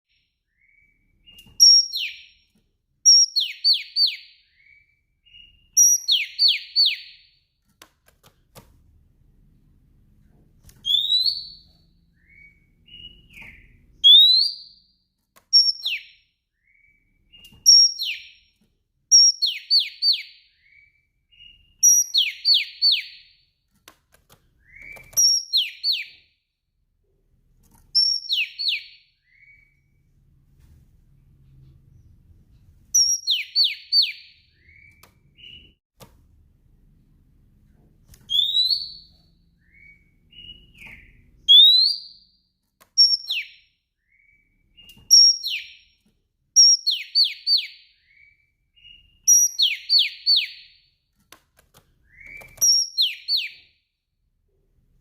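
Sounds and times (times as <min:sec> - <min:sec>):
magpie-robin whistled calls: 0:00.5 - 0:02.4, 0:03.0 - 0:07.3, 0:10.8 - 0:14.9, 0:15.5 - 0:18.5, 0:19.1 - 0:23.4, 0:24.6 - 0:26.3, 0:28.0 - 0:29.8, 0:33.0 - 0:35.8, 0:38.3 - 0:42.4, 0:43.0 - 0:46.0, 0:46.6 - 0:50.9, 0:52.0 - 0:53.8.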